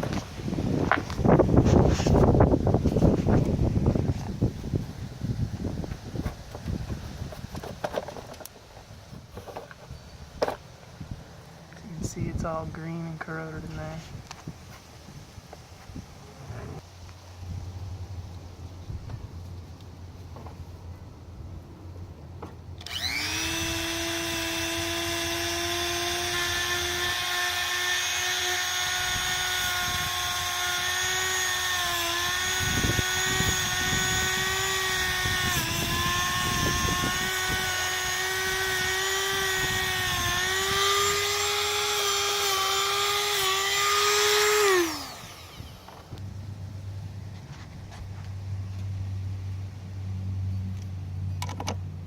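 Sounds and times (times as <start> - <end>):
power tool motor whining: 22.8 - 46.2.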